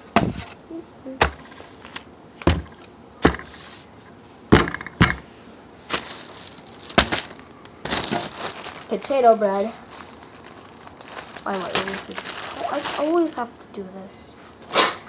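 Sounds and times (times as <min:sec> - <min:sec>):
kitchen items knocking and clacking: 0:04.5 - 0:05.2.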